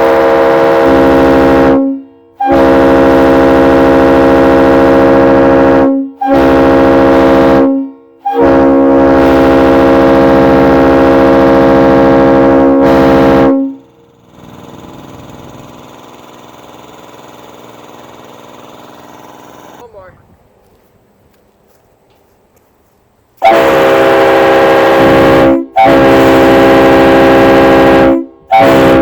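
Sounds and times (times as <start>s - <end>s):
locomotive air horn blasts: 0.0s - 14.6s, 23.4s - 29.0s
steady low hum: 0.0s - 22.4s.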